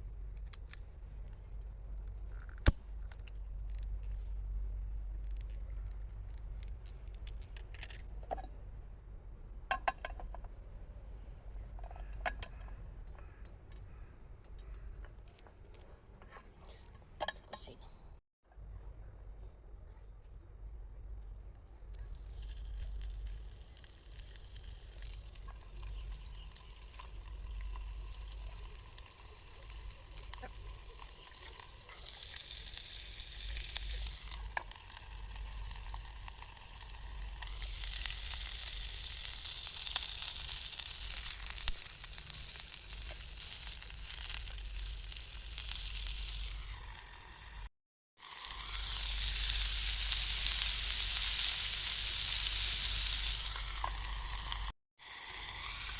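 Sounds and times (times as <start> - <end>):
food sizzling in a pan: 24.0 - 55.9.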